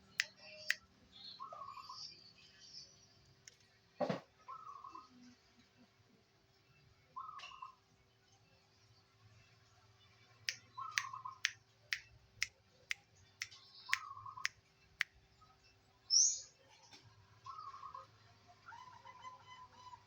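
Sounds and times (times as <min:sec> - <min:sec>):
high bird chirp: 0:10.5 - 0:11.6.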